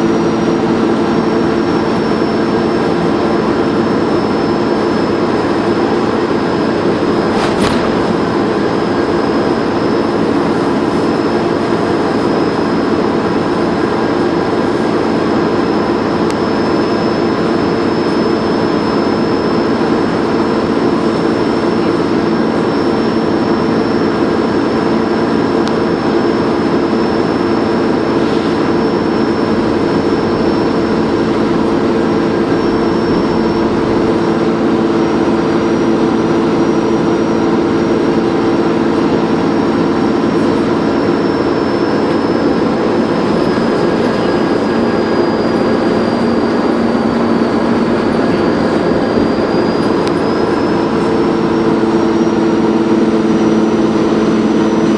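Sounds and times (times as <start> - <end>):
bus engine running: 0.0 - 54.9
high turbo whistle: 15.6 - 54.9.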